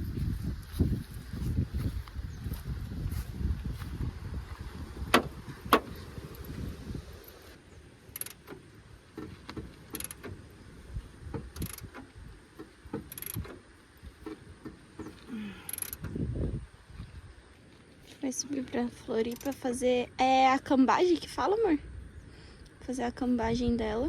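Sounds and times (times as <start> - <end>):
metal clicks and clinks: 8.1 - 8.4, 9.9 - 10.3, 11.6 - 12.0, 13.0 - 13.5, 15.7 - 16.0.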